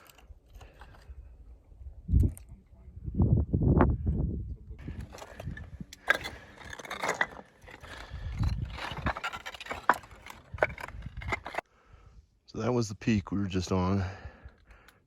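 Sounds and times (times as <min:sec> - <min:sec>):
boots crunching on loose rock: 0:04.9 - 0:11.6.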